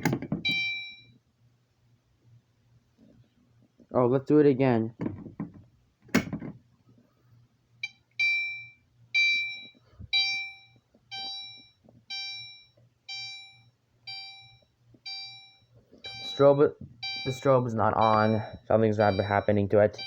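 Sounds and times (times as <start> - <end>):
fire alarm electronic chime: 0.4 - 1.2, 7.8 - 20.0.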